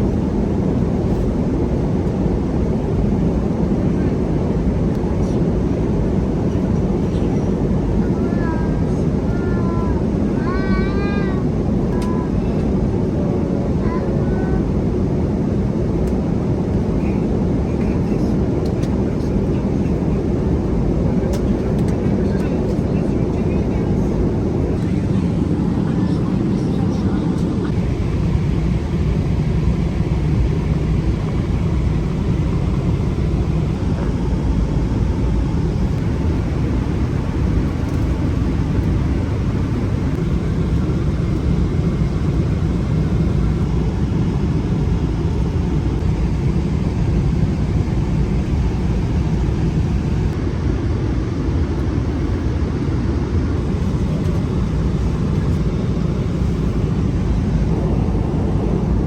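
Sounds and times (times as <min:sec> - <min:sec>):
airliner cabin rumble: 0:00.0 - 0:59.0.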